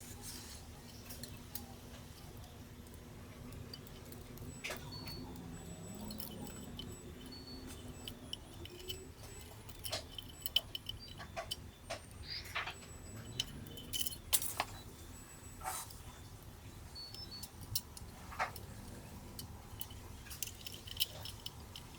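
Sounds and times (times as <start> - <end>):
small tool clicks and metallic taps: 0.9 - 14.9, 17.0 - 21.9.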